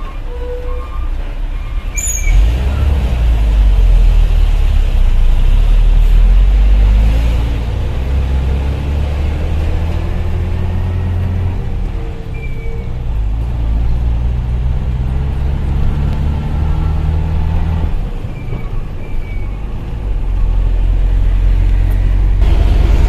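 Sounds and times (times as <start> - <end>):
short high squeak: 0.0 - 2.8, 12.3 - 13.0, 18.4 - 19.7
diesel truck engine rumbling: 0.0 - 23.0.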